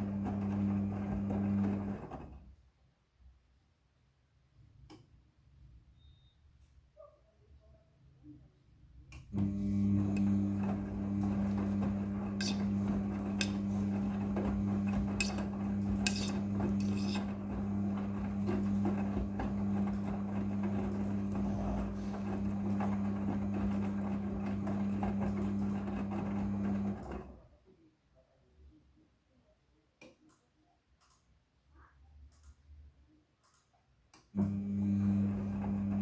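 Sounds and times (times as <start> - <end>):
washing machine motor hum: 0.0 - 2.4, 9.3 - 27.4, 34.4 - 36.0.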